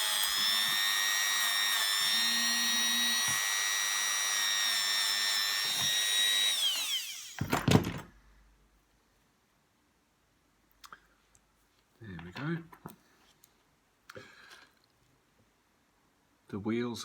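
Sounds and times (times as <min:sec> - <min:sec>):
power tool high whine: 0:00.0 - 0:07.5.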